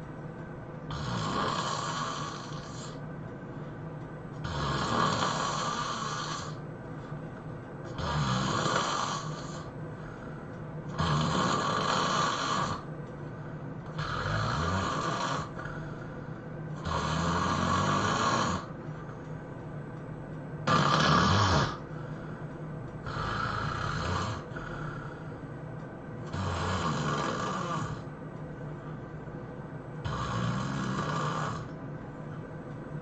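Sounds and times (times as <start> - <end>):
quiet breathing: 0.0 - 19.8, 20.7 - 32.7
person snoring: 0.9 - 3.0, 4.4 - 6.6, 7.9 - 9.7, 10.9 - 12.9, 13.8 - 16.2, 16.8 - 18.8, 20.6 - 22.4, 23.0 - 25.3, 26.2 - 28.1, 30.0 - 31.8.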